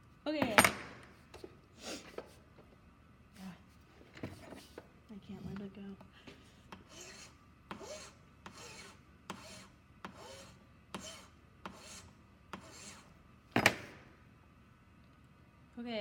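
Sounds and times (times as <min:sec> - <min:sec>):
hand file rasping on metal: 0:06.8 - 0:13.1.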